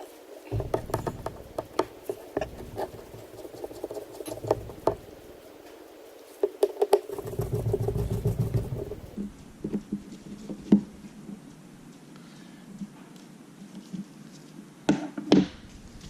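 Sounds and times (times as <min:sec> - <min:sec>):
small hand tools clicking and tapping: 0:00.5 - 0:05.8, 0:06.4 - 0:10.0.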